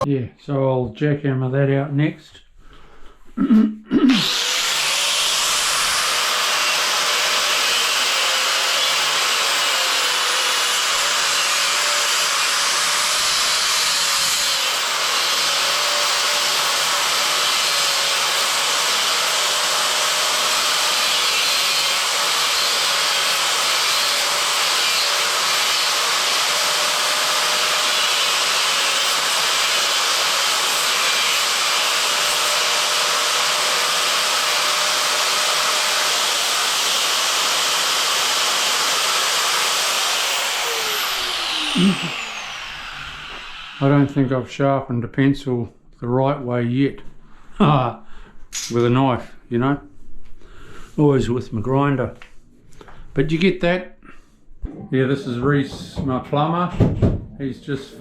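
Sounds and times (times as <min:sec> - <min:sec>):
machine motor hissing and humming: 0:40.4 - 0:44.0.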